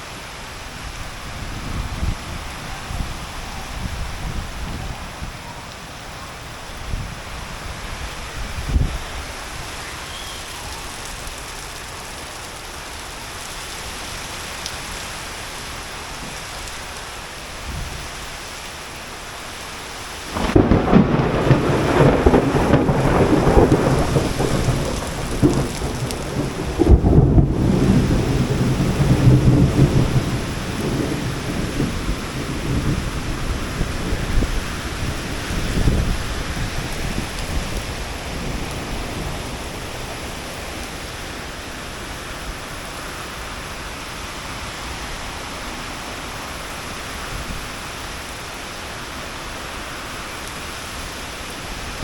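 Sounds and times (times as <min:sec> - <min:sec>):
heavy rain: 0:00.0 - 0:52.0.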